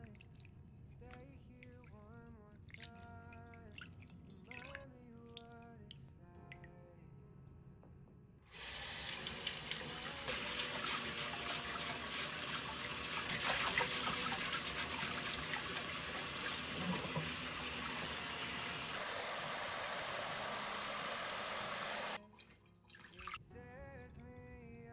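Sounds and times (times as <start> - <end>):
tap water running into sink: 8.6 - 22.2.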